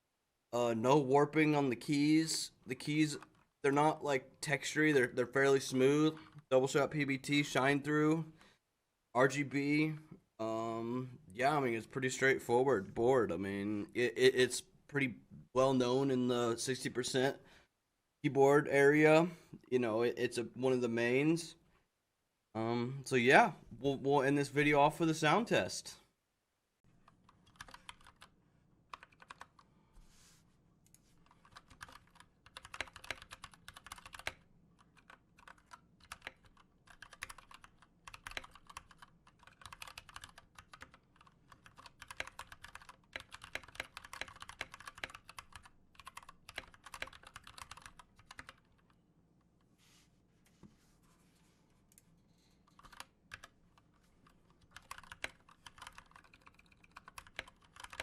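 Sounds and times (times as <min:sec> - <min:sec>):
mechanical keyboard typing clicks: 0:27.3 - 0:28.3, 0:31.4 - 0:48.9, 0:52.8 - 0:53.5, 0:54.6 - 0:58.0.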